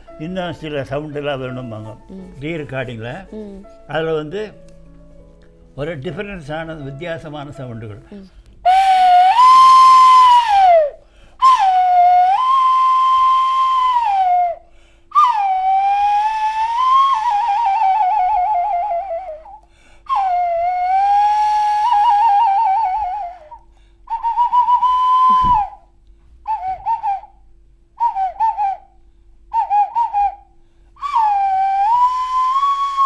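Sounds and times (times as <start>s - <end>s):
toy whistle warbling: 8.7s - 14.4s, 24.2s - 25.8s.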